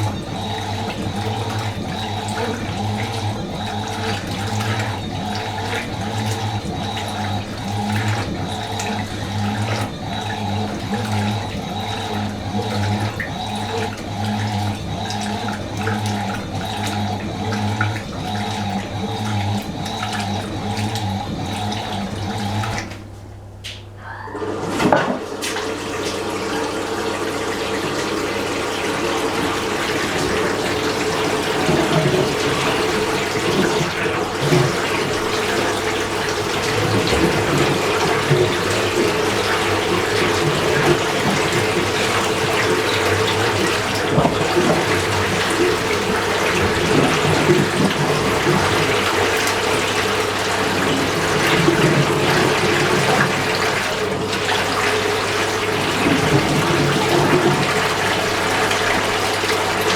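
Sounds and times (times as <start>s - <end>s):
washing machine pulsing hum: 0.0s - 59.9s
rush of water: 24.4s - 59.9s.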